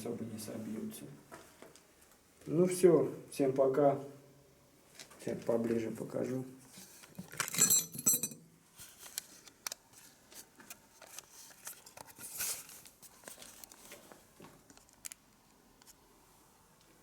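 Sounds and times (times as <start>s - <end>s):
rustling: 8.8s - 15.1s.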